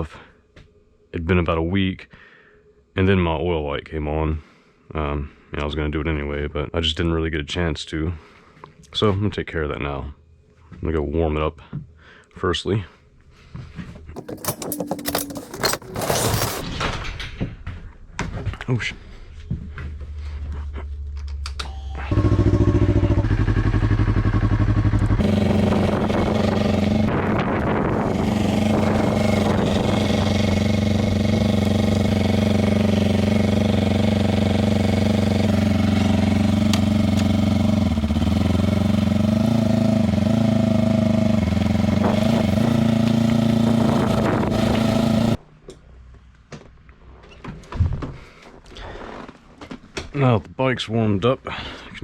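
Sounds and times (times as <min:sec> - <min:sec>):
motorcycle engine starting and idling: 0:14.2 - 0:16.6, 0:21.0 - 0:45.4.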